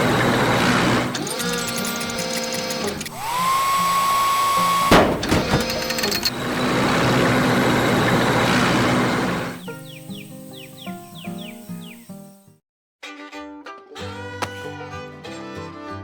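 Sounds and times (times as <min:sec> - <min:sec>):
motor whine: 0:00.0 - 0:12.4
whirring hiss: 0:00.0 - 0:12.6
rattling clicks: 0:01.1 - 0:06.5
sharp clunk: 0:04.8 - 0:06.3, 0:14.4 - 0:14.6.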